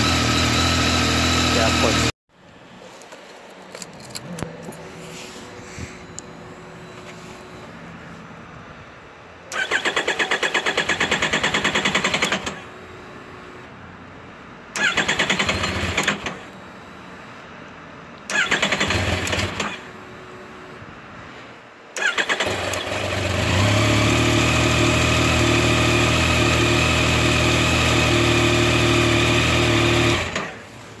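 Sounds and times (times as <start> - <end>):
electric starter cranking: 0.0 - 2.1, 9.5 - 12.7, 14.8 - 16.5, 18.3 - 19.8, 22.0 - 30.6
motorcycle engine running: 0.0 - 2.1, 22.9 - 30.4.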